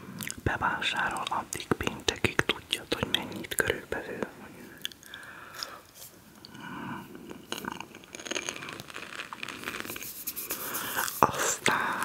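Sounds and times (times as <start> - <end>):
crunchy snack chewing: 7.5 - 11.3.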